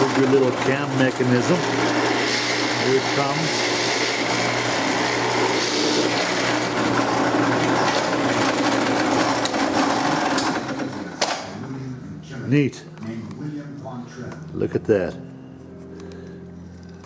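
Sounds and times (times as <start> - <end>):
drilling machine whirring: 0.0 - 11.2.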